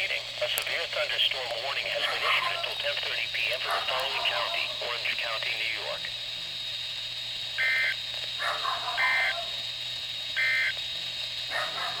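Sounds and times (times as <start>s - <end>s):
radio hum and hiss: 0.0s - 12.0s
buzzy digital data bursts: 7.4s - 8.1s, 9.0s - 9.5s, 10.3s - 10.8s.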